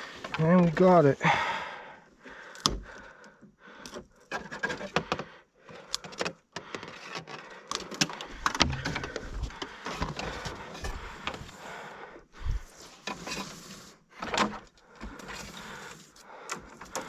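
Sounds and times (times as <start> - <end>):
cable and gear handled: 3.8 - 11.7.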